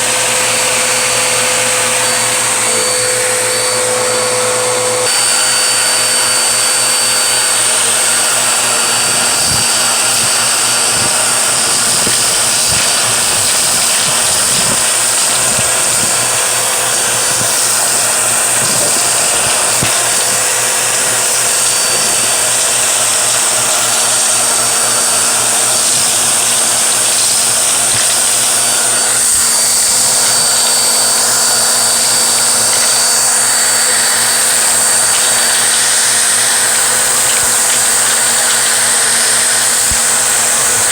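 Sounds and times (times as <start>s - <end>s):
vacuum cleaner running: 0.0s - 40.9s
scattered clicks: 7.8s - 23.5s.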